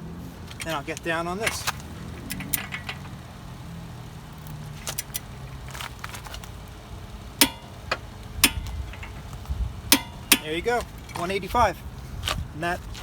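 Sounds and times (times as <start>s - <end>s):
torque wrench ticking: 0.6s - 3.5s, 4.4s - 5.5s, 7.3s - 11.2s.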